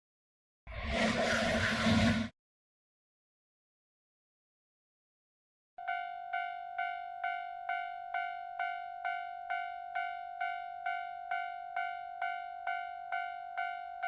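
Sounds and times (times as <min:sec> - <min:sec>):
railroad crossing bell ringing: 0:05.8 - 0:14.0.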